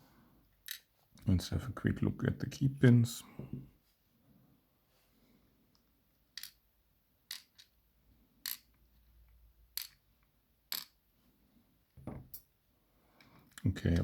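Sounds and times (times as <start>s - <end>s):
small metallic clicks: 7.3s - 7.8s, 8.4s - 10.0s.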